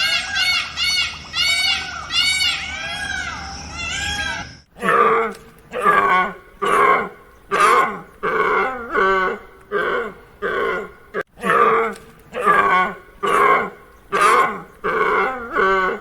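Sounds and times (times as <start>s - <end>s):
high arching chirps: 0.0s - 11.2s
animal grunting calls: 4.8s - 16.0s.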